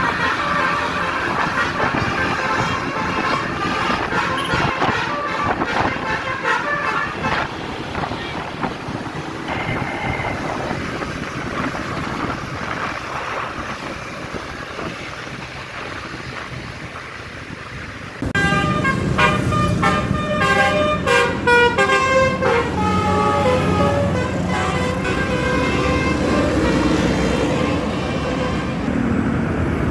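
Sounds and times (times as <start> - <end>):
road and engine noise: 0.0 - 29.9
musical air horn playing a tune: 0.1 - 7.4, 18.2 - 28.8.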